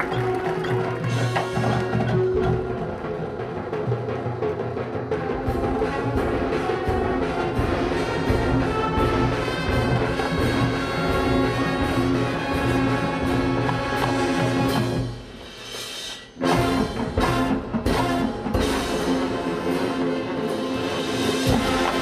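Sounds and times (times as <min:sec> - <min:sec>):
drum strikes: 0:00.0 - 0:19.8, 0:21.1 - 0:22.0
brass playing held chords: 0:05.4 - 0:15.1, 0:16.4 - 0:22.0.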